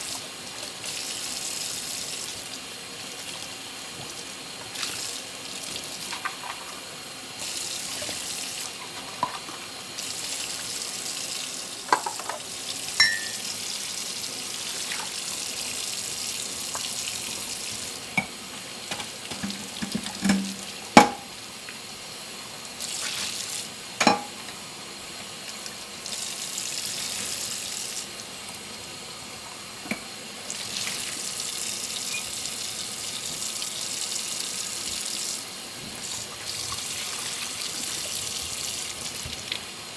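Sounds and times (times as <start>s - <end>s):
dishes clinking: 11.9s - 13.5s, 18.2s - 21.3s, 24.0s - 24.5s
tap running: 16.8s - 21.2s.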